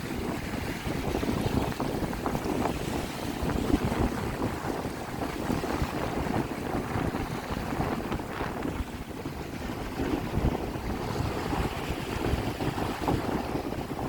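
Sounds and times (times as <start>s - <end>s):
lake waves lapping at shore: 0.0s - 14.0s
wind gusting on microphone: 0.0s - 14.0s.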